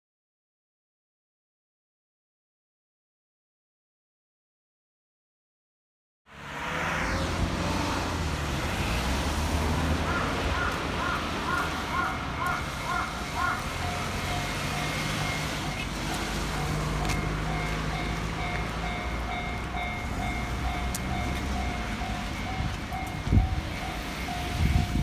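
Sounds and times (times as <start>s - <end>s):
road traffic: 6.3s - 25.0s
level crossing alarm ringing: 11.2s - 25.0s.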